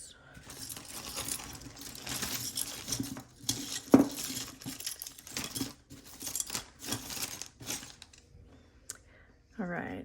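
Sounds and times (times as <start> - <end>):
metal jewelry clinking: 0.4 - 8.3.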